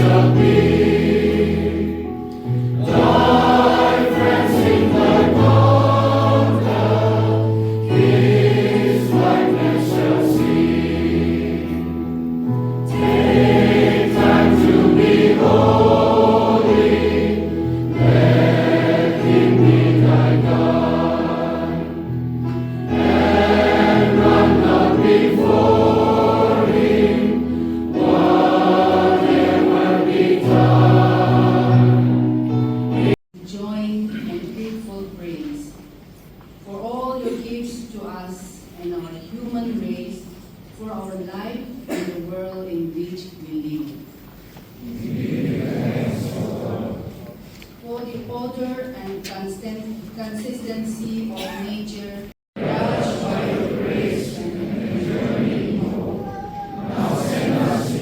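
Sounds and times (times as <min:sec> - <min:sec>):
choir singing a hymn: 0:00.0 - 0:33.2, 0:44.8 - 0:47.4, 0:52.6 - 0:56.2, 0:56.8 - 0:58.0.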